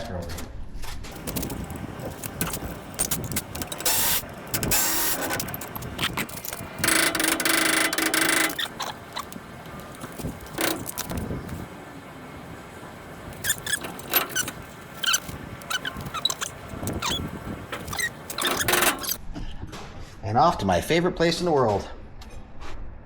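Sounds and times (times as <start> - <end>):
metal tools clinking and clattering: 1.1 - 11.6.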